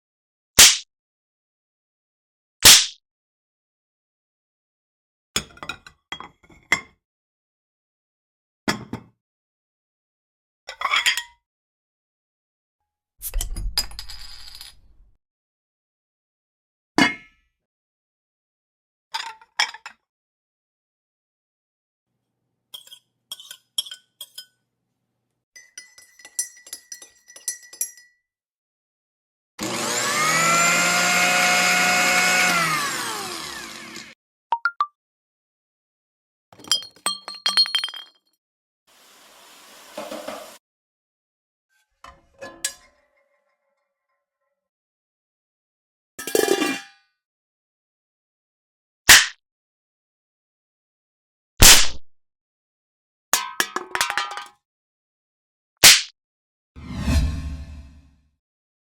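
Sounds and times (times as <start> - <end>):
glassware and dishes clinking: 22.8 - 24.6, 25.6 - 28.2, 36.6 - 38.2
loud swish: 56.8 - 58.1.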